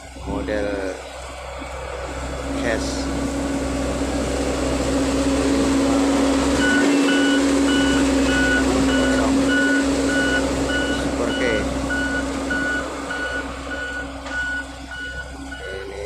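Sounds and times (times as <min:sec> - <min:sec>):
diesel engine under load: 0:00.0 - 0:16.0
reversing alarm beeping: 0:00.9 - 0:16.0.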